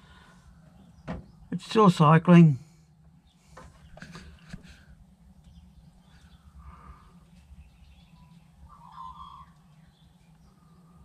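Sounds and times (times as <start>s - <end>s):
faint low hum: 0.0s - 11.0s
distant animal calls: 6.0s - 11.0s.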